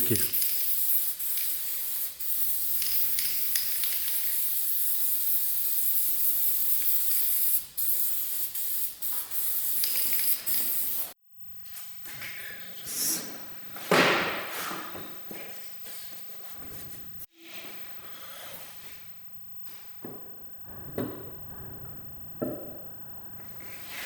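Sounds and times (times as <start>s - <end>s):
steady spray-like hiss: 0.0s - 11.2s.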